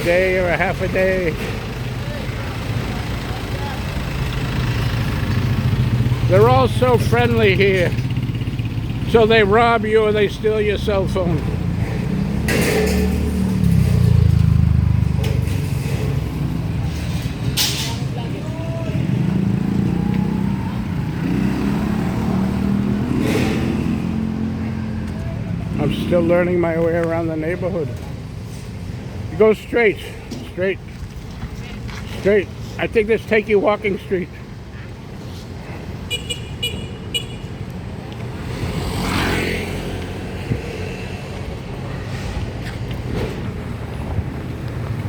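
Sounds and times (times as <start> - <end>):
vehicle engine running: 0.0 - 11.5
vehicle passing: 0.0 - 29.2, 37.8 - 45.0.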